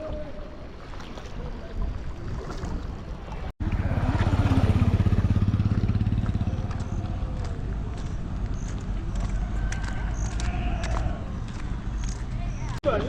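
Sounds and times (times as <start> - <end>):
engine running: 3.6 - 12.2.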